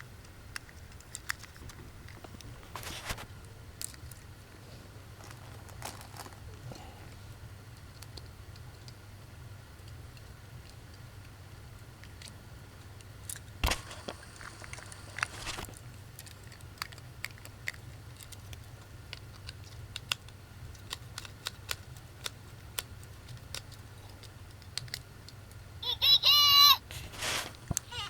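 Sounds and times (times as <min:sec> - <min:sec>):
low steady hum: 0:00.0 - 0:28.0
brief rustle: 0:13.6 - 0:15.7, 0:26.9 - 0:27.8
plastic toys clicking and tapping: 0:15.8 - 0:25.6.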